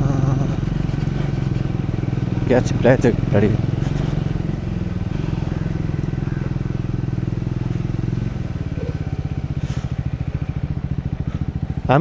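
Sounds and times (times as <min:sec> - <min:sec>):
single-cylinder motorcycle engine: 0:00.0 - 0:12.0.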